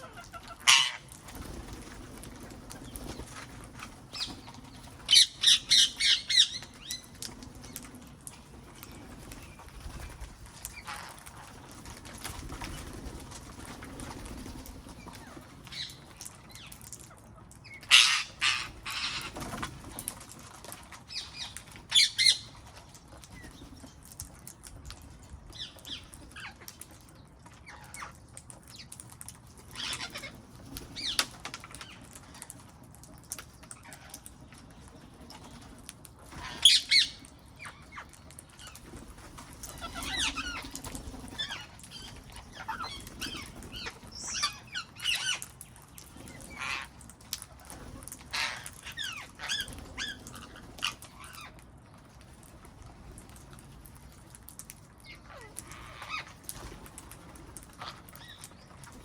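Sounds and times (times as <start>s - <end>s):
parrots squawking harshly: 0.0s - 1.1s, 5.1s - 6.9s, 17.9s - 19.4s, 46.5s - 46.9s, 48.3s - 50.6s.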